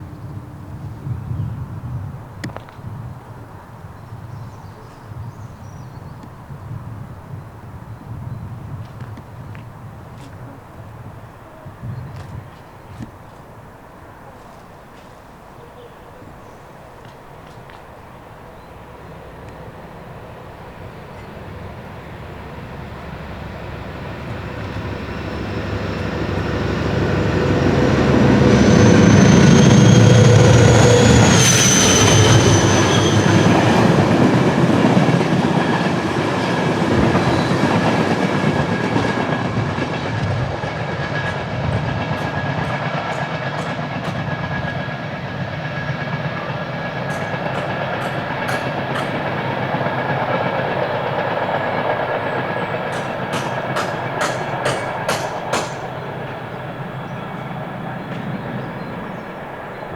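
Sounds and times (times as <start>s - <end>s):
diesel locomotive engine running hard: 16.7s - 59.9s
high engine whine: 18.7s - 59.9s
freight wagons clickety-clack: 30.6s - 58.9s.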